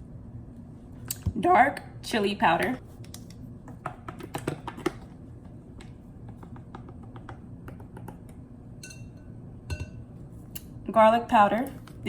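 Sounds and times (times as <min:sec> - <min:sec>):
spice containers clicking: 0:03.7 - 0:05.1, 0:06.4 - 0:08.4.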